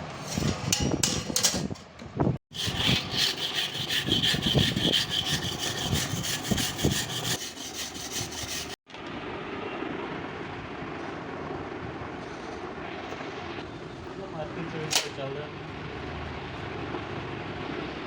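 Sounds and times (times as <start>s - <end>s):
hand tool scraping metal plate: 0.0s - 1.9s, 2.5s - 8.8s.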